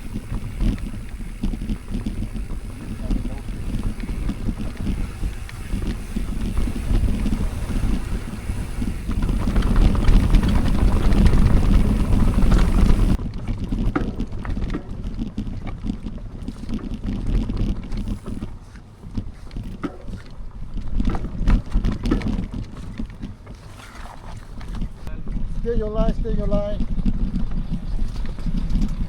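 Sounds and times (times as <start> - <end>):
wind rushing over microphone: 0.0 - 23.2
bike clicks and rattles: 0.0 - 25.1, 26.0 - 29.0
bike tyre rumble: 0.0 - 29.0.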